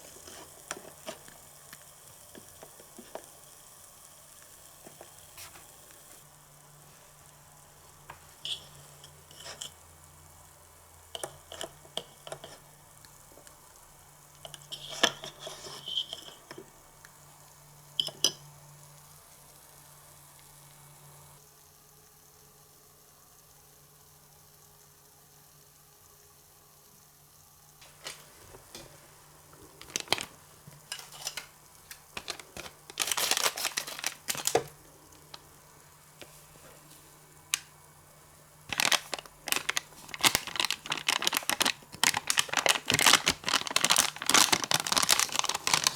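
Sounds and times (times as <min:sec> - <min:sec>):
crackling rustling: 0:27.8 - 0:35.6, 0:38.7 - 0:45.9
plastic toy dishes handled: 0:29.8 - 0:34.8, 0:38.7 - 0:45.9.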